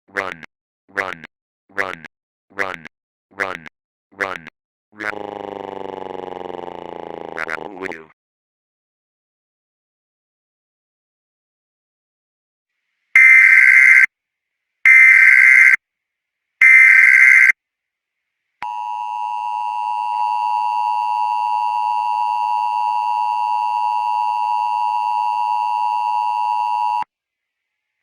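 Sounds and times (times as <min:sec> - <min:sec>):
two-tone attention signal: 0:13.2 - 0:14.1, 0:14.9 - 0:15.8, 0:16.6 - 0:17.5
warbling data tones: 0:13.2 - 0:14.1, 0:14.9 - 0:15.8, 0:16.6 - 0:17.5.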